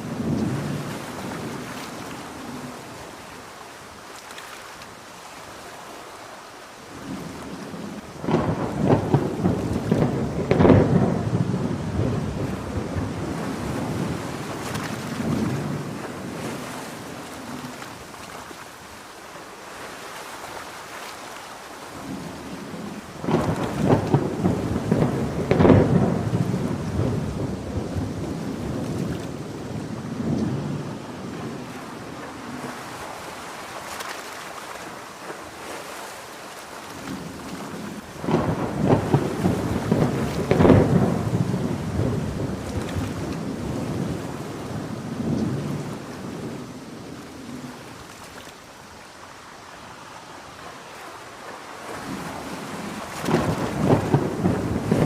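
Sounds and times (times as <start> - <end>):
heavy rain: 0.0 - 55.0
thunder rolling: 7.0 - 17.1, 22.0 - 33.0, 37.1 - 47.9, 52.0 - 55.0.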